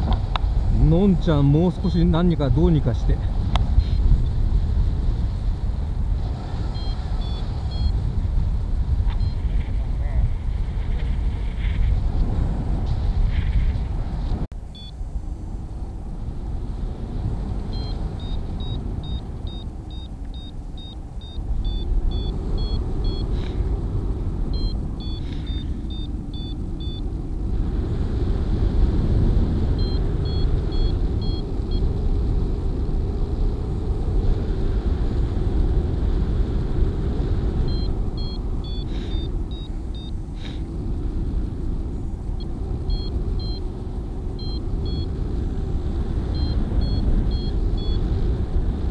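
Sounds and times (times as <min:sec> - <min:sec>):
wind rushing over microphone: 0:00.0 - 0:48.9
variometer beeping: 0:06.6 - 0:08.1, 0:14.7 - 0:15.0, 0:17.7 - 0:23.5, 0:24.4 - 0:27.1, 0:29.7 - 0:32.0, 0:37.6 - 0:40.3, 0:42.4 - 0:43.8, 0:44.4 - 0:45.3, 0:46.2 - 0:48.2.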